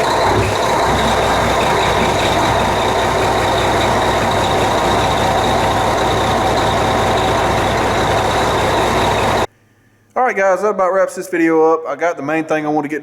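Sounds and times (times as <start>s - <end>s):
diesel truck engine idling: 0.0s - 9.5s.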